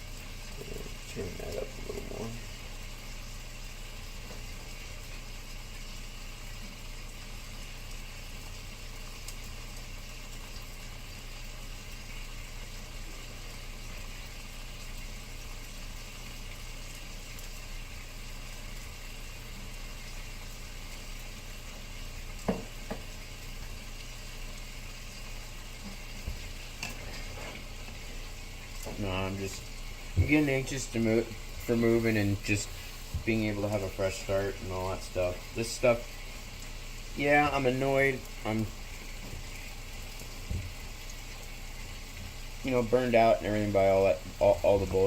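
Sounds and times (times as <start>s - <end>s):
meat and onions sizzling in pan: 0.0s - 45.0s.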